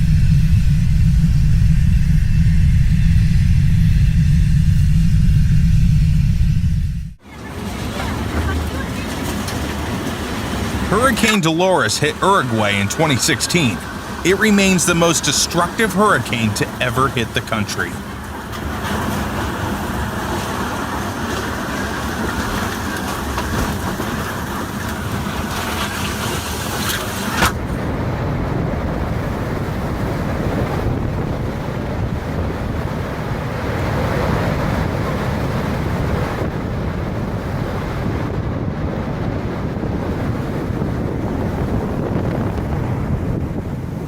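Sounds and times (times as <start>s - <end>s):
storm wind buffeting microphone: 27.6s - 44.0s.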